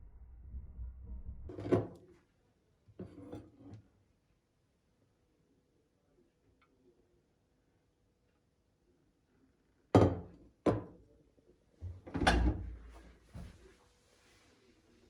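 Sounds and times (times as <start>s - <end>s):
dishwasher knocks and thumps: 11.8s - 12.8s.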